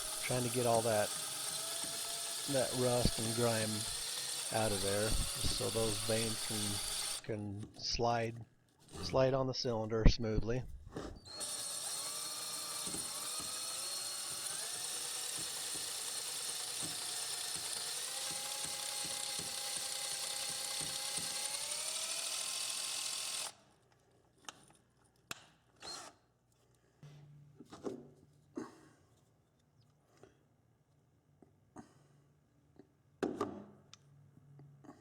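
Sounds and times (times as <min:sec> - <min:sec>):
electric drill spinning cylinder hone: 0:00.0 - 0:07.3, 0:11.2 - 0:23.6, 0:25.8 - 0:26.2.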